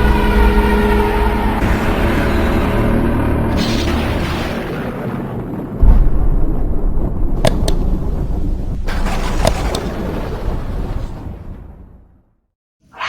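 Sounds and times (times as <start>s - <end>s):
deep thunder-like boom: 0.0s - 12.2s
sharp cracks: 3.5s - 10.4s.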